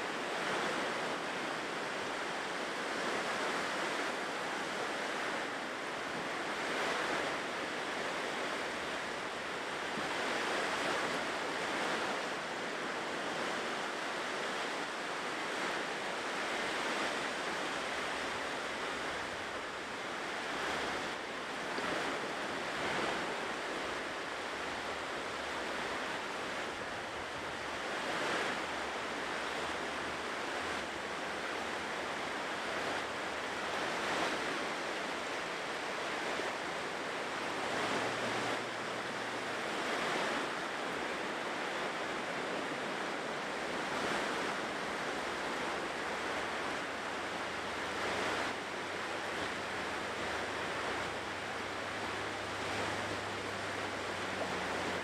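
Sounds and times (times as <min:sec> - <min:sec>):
ocean surf washing onto shore: 0:00.0 - 0:55.0.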